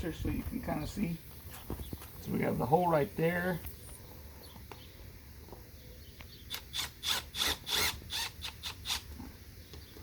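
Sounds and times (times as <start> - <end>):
power drill driving screw: 6.5 - 9.0.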